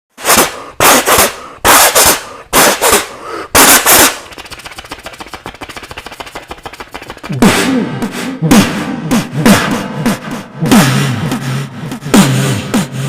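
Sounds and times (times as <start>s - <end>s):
person imitating gunshots: 0.2s - 5.0s, 7.1s - 13.0s
person imitating machine-gun rattle: 0.3s - 7.4s.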